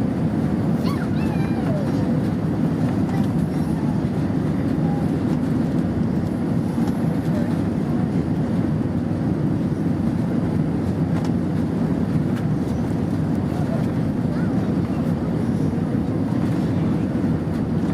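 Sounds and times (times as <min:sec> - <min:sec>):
airplane cabin engine rumble: 0:00.0 - 0:17.9.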